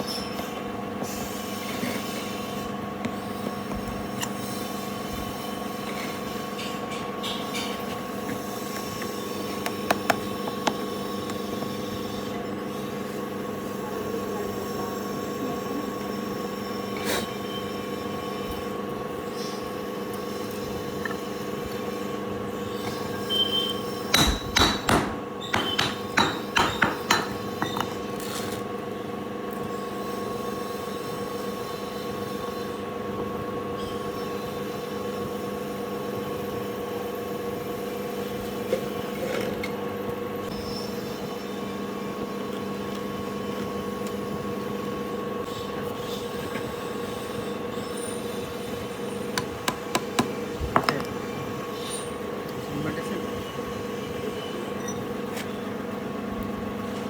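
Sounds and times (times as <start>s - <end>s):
workshop machine hum: 0.0s - 57.0s
sharp metal knocks: 24.1s - 27.4s.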